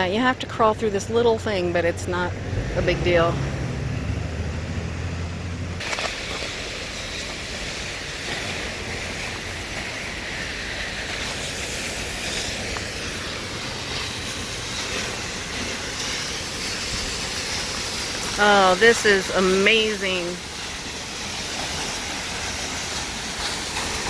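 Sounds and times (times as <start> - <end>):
waterfall rushing: 5.8 - 24.0.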